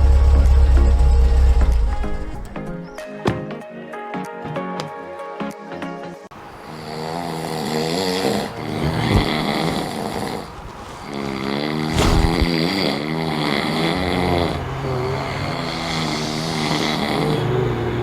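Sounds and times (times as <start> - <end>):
music: 0.0 - 6.3
person snoring loudly: 6.6 - 18.0.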